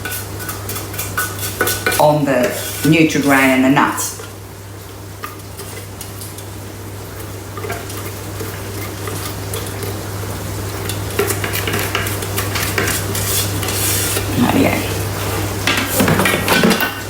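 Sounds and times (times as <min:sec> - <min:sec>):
utensil stirring cereal in bowl: 0:00.0 - 0:04.4, 0:07.1 - 0:14.8.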